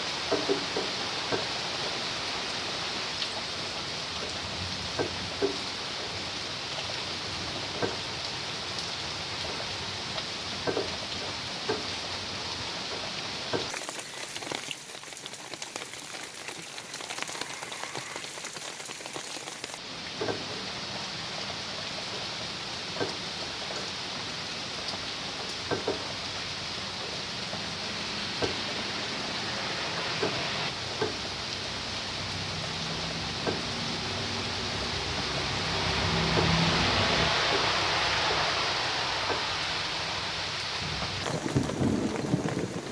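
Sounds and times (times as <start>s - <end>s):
steady rain falling: 0.0s - 42.9s
thin high hiss: 13.7s - 19.8s.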